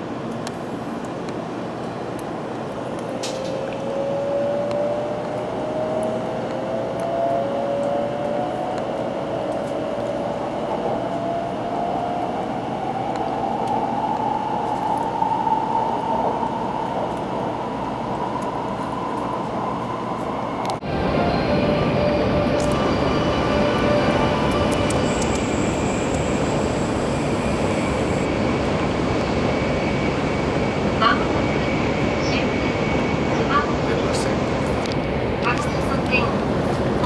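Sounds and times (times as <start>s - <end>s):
train running noise: 18.3s - 37.0s
traction motor whine rising: 21.3s - 31.0s.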